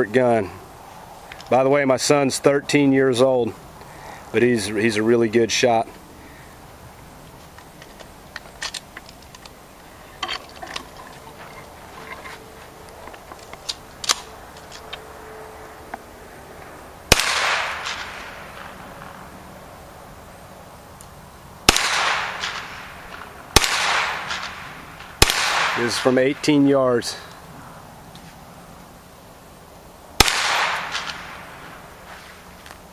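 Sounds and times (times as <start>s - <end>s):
gunshots with echo: 17.1s - 19.1s, 21.7s - 26.6s, 30.2s - 31.8s.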